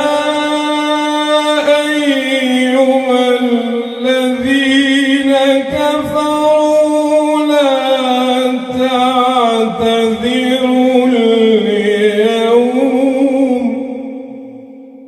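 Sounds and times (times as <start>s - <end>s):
man chanting melodically: 0.0s - 15.0s.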